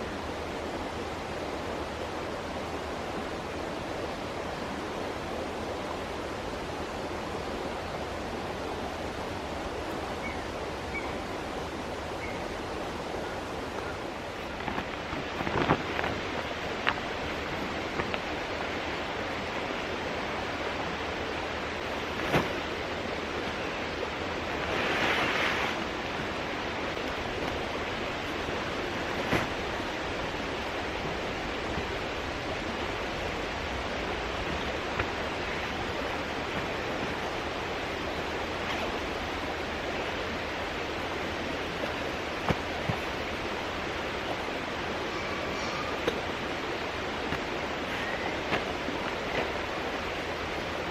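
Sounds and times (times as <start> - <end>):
mountain stream rushing: 0.0 - 50.9
hissing rustle: 12.0 - 50.9.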